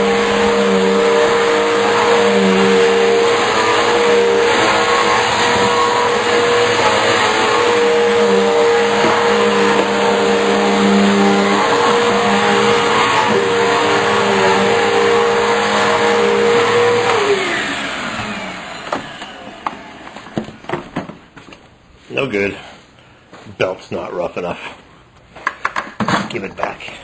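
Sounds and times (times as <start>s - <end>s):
vacuum cleaner winding down: 0.0s - 20.7s
vacuum cleaner running: 0.0s - 21.1s.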